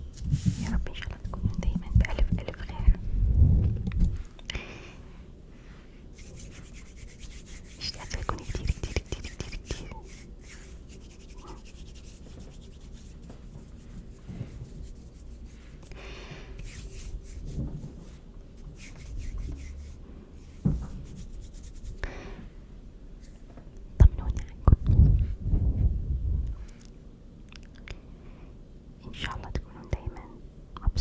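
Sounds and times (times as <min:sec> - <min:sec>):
hands rubbing together: 0:06.2 - 0:22.0, 0:23.2 - 0:23.4.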